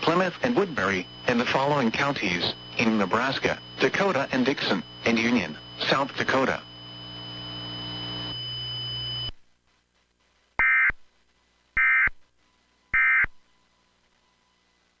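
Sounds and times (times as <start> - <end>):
electrical hum with high whine: 0.0 - 15.0
buzzy digital data tone bursts: 0.1 - 9.2.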